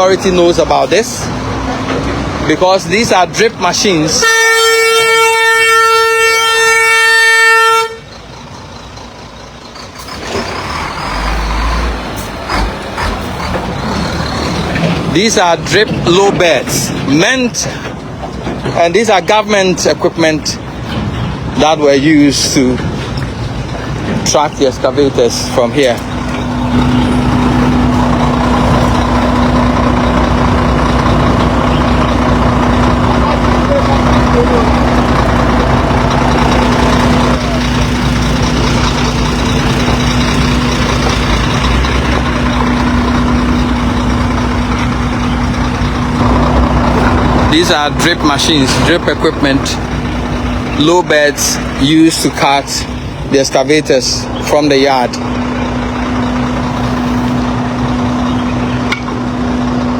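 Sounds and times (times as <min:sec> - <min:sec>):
engine noise: 0:00.0 - 0:59.9
truck horn blast: 0:04.1 - 0:08.2.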